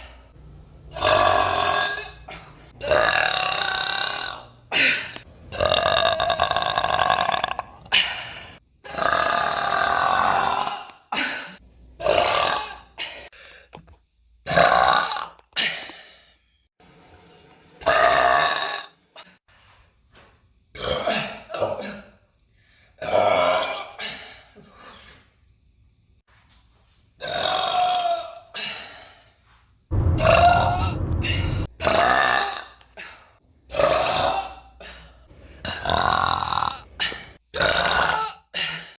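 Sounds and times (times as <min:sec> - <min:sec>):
woman burping loudly: 0:02.8 - 0:04.4, 0:35.6 - 0:36.8, 0:37.5 - 0:38.4
woman burping: 0:37.6 - 0:38.4.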